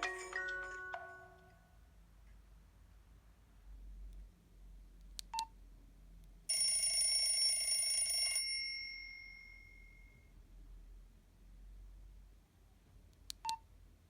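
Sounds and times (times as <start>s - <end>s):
bell-like phone ringtone: 0.0s - 1.6s, 6.5s - 10.2s.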